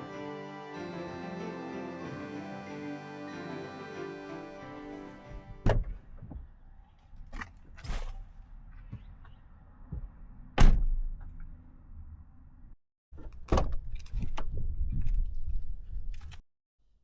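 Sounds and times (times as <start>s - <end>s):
background music: 0.0s - 5.7s.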